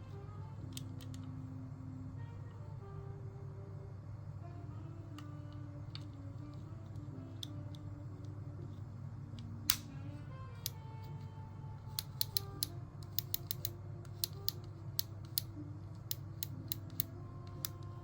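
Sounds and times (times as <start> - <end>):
quiet background music: 0.0 - 18.0
steady low hum: 0.0 - 18.0
small parts clicking: 11.9 - 15.5, 16.1 - 18.0.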